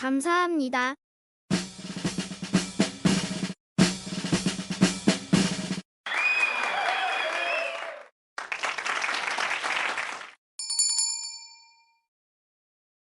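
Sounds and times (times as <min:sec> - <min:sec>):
crowd cheering and applause: 0:06.0 - 0:10.4
bell ding: 0:10.6 - 0:12.1.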